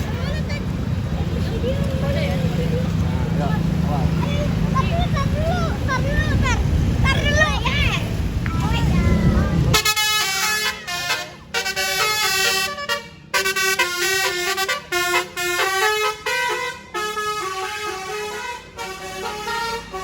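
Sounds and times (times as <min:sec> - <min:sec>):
loud low rumble: 0:03.7 - 0:09.8
multi-tone air horn melody: 0:09.7 - 0:20.0.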